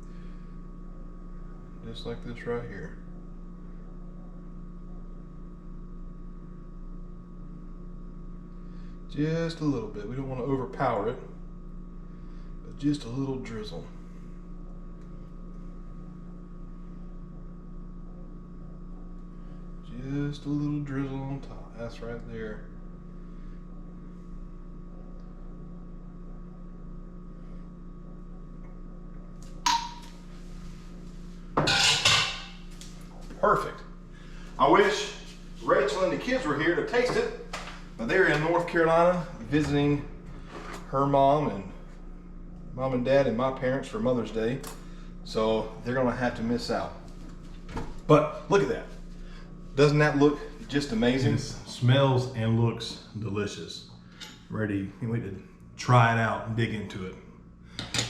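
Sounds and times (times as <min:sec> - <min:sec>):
electrical hum: 0:00.0 - 0:58.0
dishware clattering: 0:31.6 - 0:32.5
dishware clinking: 0:31.6 - 0:32.5.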